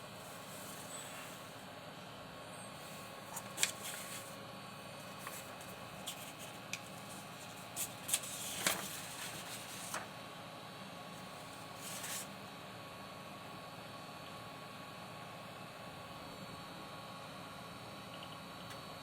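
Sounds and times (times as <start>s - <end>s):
computer fan whirring: 0.0s - 19.0s
handling rustles and clicks: 3.3s - 4.3s, 5.1s - 10.0s.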